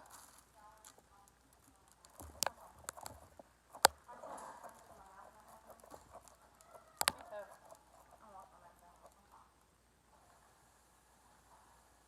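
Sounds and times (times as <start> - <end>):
hard objects knocking: 7.0 - 7.8.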